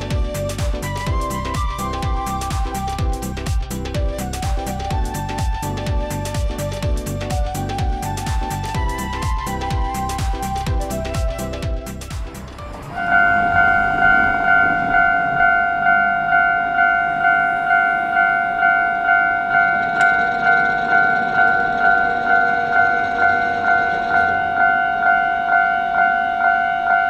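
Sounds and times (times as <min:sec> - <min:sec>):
level crossing electronic bell: 0:13.0 - 0:27.0.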